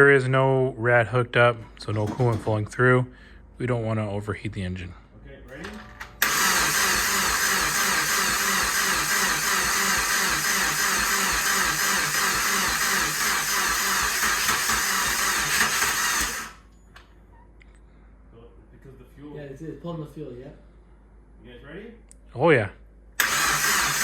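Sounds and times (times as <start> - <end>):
starter motor cranking engine: 5.5 - 16.7, 23.2 - 24.0.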